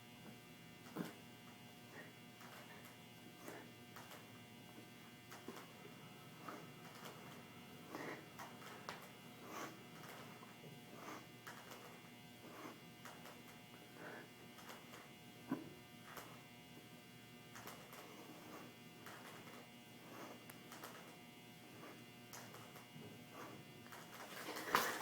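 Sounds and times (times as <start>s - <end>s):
faint electrical hum: 0.0s - 25.0s.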